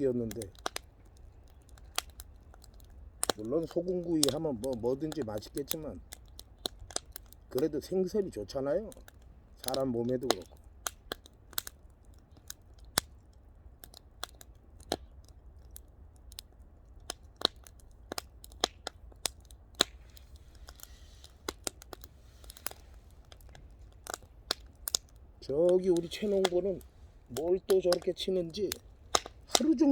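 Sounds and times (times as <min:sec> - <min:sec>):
fire crackling and popping: 0:00.0 - 0:29.9
low steady rumble: 0:19.0 - 0:29.9.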